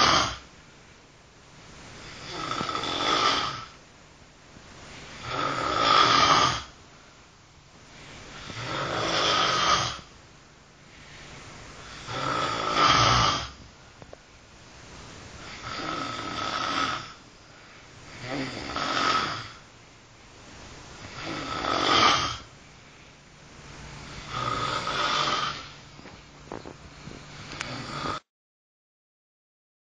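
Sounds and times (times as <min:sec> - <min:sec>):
man snoring: 0:00.0 - 0:00.4, 0:02.1 - 0:03.8, 0:05.2 - 0:06.8, 0:08.3 - 0:10.1, 0:11.8 - 0:13.6, 0:15.4 - 0:17.2, 0:18.1 - 0:19.6, 0:21.0 - 0:22.5, 0:24.0 - 0:25.8, 0:27.6 - 0:28.3.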